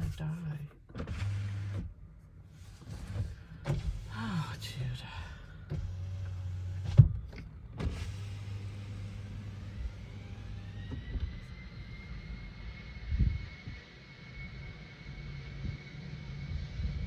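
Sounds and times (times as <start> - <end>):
cabin low hum: 0.0 - 17.0
jet engine whine: 8.0 - 17.0.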